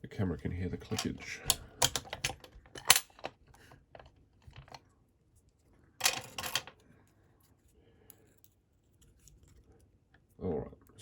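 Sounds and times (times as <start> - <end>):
lock picks clicking: 0.9 - 3.3.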